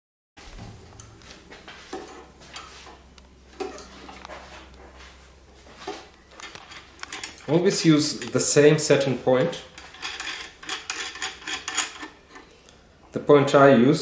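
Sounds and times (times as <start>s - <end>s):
low steady hum: 0.4s - 14.0s
small metal parts clicking: 6.4s - 8.4s, 9.7s - 12.4s.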